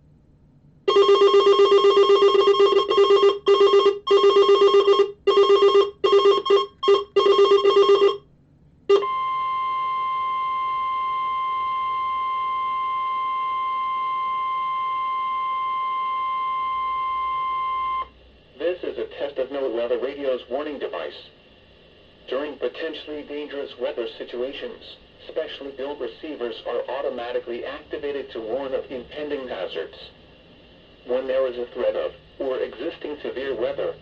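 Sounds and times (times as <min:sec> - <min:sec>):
steady high alarm tone: 0:00.9 - 0:08.2, 0:08.9 - 0:18.1.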